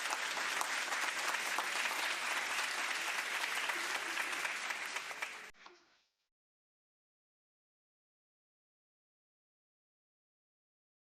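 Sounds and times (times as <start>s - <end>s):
crowd applause: 0.0s - 5.6s.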